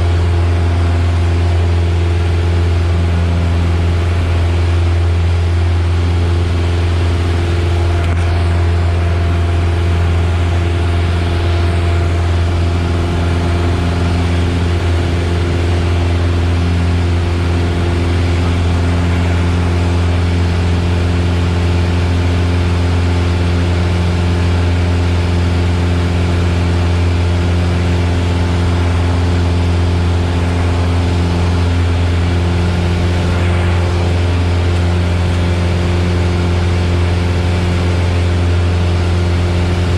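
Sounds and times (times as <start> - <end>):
aircraft engine droning: 0.0 - 39.9
rush of air noise: 26.3 - 39.9.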